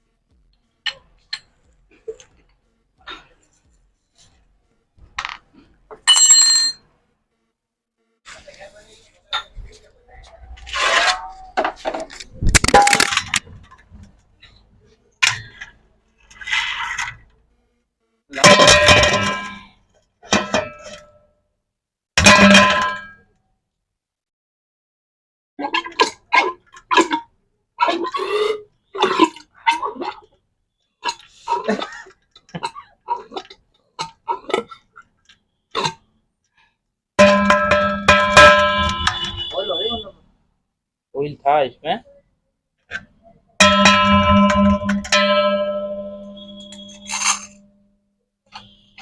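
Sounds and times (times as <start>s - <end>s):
metal scrape: 10.5s - 14.1s, 15.4s - 17.3s, 43.6s - 47.6s
metal parts clinking: 46.2s - 47.6s.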